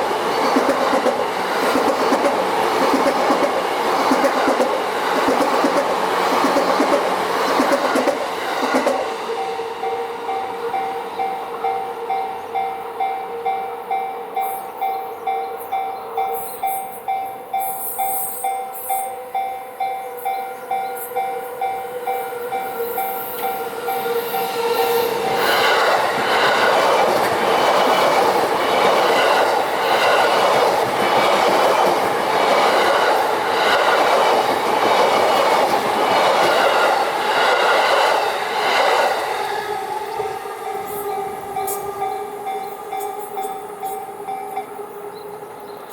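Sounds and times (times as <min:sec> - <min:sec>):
train wheel clatter: 0:00.0 - 0:09.1, 0:22.7 - 0:42.0
train passing: 0:00.0 - 0:45.9
level crossing warning bell: 0:09.3 - 0:28.0, 0:40.2 - 0:45.2.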